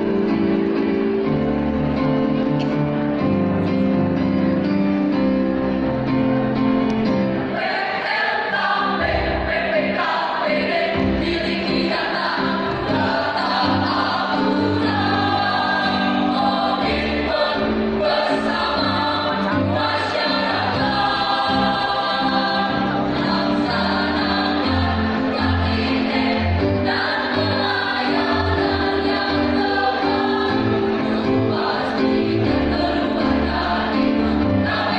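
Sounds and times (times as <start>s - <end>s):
instrumental accompaniment: 0.0s - 34.9s
choir singing: 7.2s - 34.9s.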